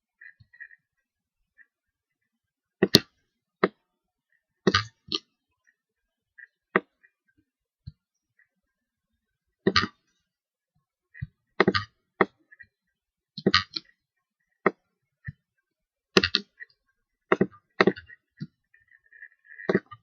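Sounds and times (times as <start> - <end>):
sharp clicks and knocks: 2.8 - 3.8, 9.6 - 10.0, 11.2 - 12.6, 16.2 - 16.7, 17.3 - 18.6, 19.5 - 20.0.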